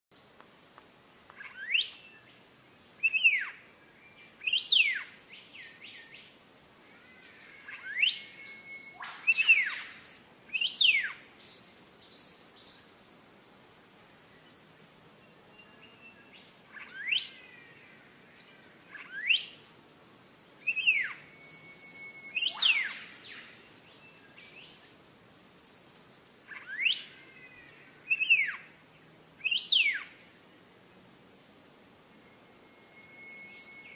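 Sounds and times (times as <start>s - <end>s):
faint high bird chirping: 0.2s - 30.6s, 31.4s - 33.9s
birds whistling sweeping notes: 7.2s - 13.0s, 20.2s - 28.7s, 32.1s - 33.9s.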